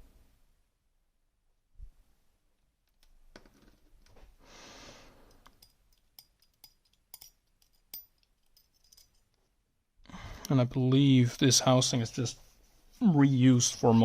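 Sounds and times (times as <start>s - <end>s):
soft breath: 4.3s - 5.5s, 10.0s - 10.6s.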